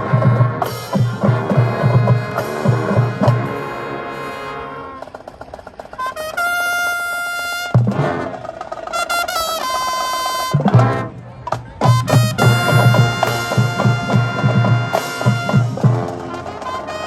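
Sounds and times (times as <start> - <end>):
brass sustained chords: 0.0 - 5.0, 12.0 - 17.0.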